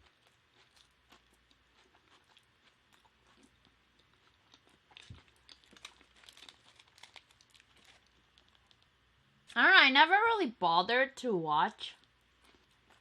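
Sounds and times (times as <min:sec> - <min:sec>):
close chewing with mouth clicks: 0:00.0 - 0:08.9, 0:12.0 - 0:13.0
crunchy bites: 0:00.0 - 0:08.9.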